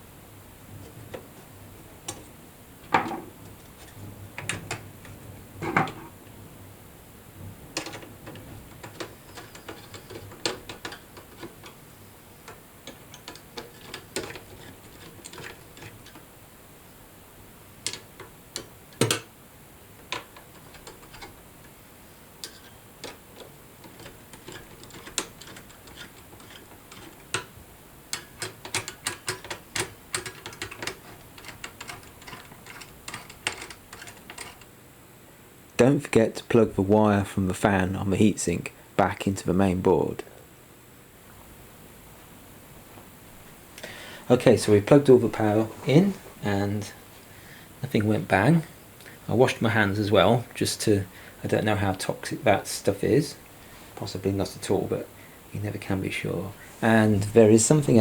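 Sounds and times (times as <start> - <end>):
computer parts clicking and knocking: 7.7 - 11.8, 12.4 - 16.3, 17.8 - 19.3, 20.0 - 21.4, 22.4 - 34.7.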